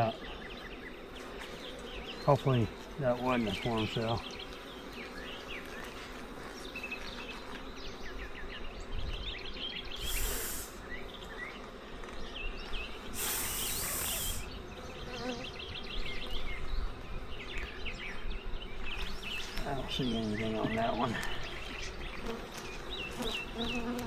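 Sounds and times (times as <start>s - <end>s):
honeybees buzzing: 0.0s - 24.0s
short bursts of hiss: 10.0s - 11.0s, 13.1s - 14.6s.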